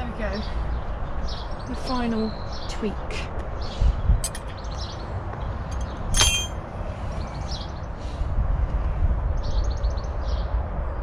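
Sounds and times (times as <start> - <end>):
metal tool clinking on metal: 4.2 - 4.5, 5.7 - 6.6.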